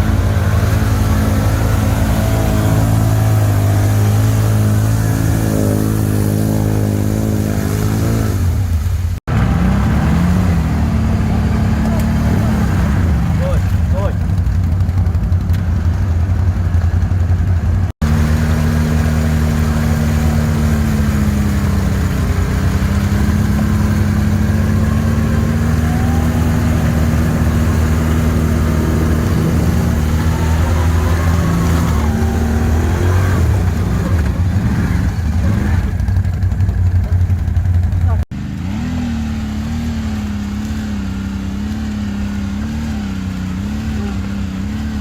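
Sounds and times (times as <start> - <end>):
atv engine droning: 0.0 - 45.0.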